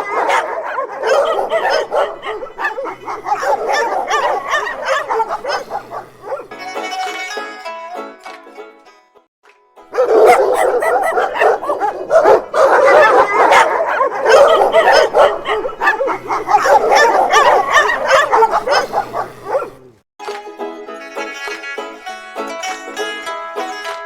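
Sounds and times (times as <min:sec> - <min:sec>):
dogs barking and yipping: 0:00.0 - 0:06.6, 0:09.9 - 0:20.0.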